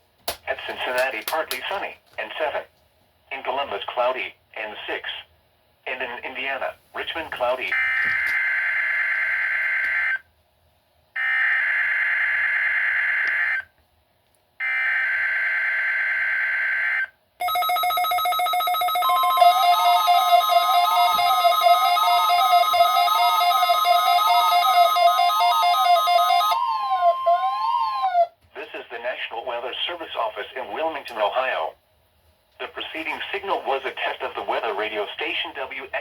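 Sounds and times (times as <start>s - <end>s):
steady warning alarm tone: 14.6s - 28.3s.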